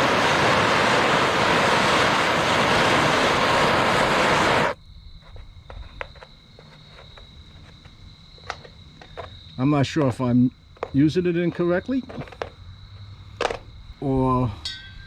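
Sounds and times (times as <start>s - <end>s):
torch flame blowing: 0.0s - 4.8s.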